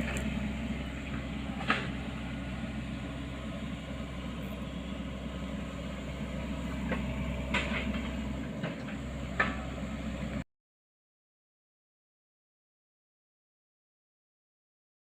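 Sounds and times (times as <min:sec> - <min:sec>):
excavator diesel engine running: 0:00.0 - 0:10.4.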